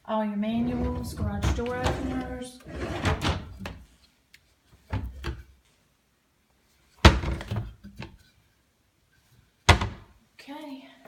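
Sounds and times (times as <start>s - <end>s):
cabinet door sharp thunk: 9.7s - 10.0s.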